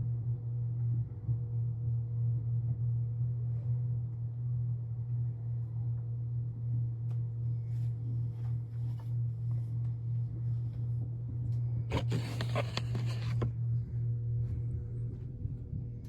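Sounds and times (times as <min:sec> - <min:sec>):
muffled vacuum cleaner drone: 0:00.2 - 0:16.0
close rustling scrape: 0:11.9 - 0:13.5.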